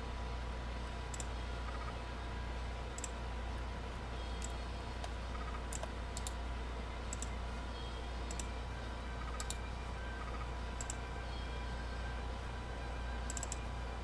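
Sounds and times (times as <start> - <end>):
low steady hum: 0.0 - 14.0
computer mouse clicking: 1.1 - 2.0, 2.9 - 3.2, 4.4 - 6.4, 7.1 - 7.4, 8.3 - 8.5, 9.2 - 9.6, 10.2 - 11.0, 13.2 - 13.6.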